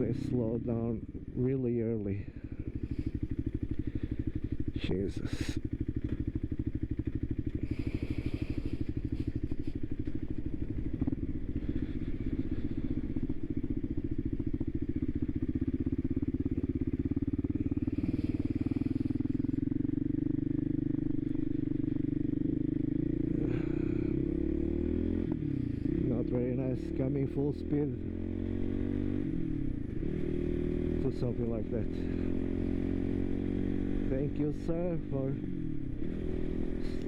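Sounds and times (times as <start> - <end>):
motorcycle engine at low revs: 0.0 - 37.0.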